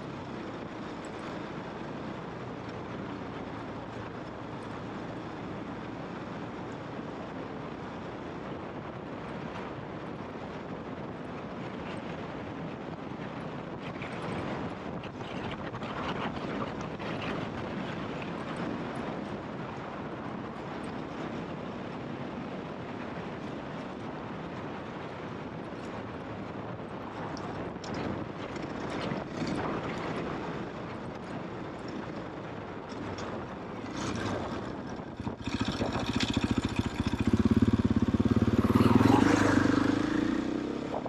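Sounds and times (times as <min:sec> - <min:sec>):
wind noise: 0:00.0 - 0:41.0
motorcycle engine running: 0:32.9 - 0:41.0.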